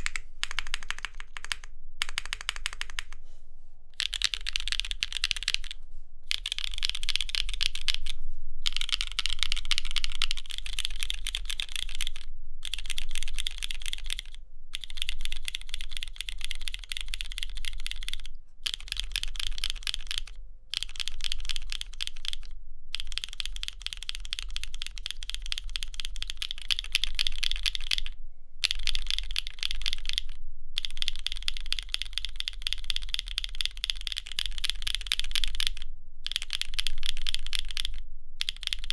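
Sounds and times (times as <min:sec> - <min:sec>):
typing on mechanical keyboard: 0:00.0 - 0:03.2, 0:04.0 - 0:38.9.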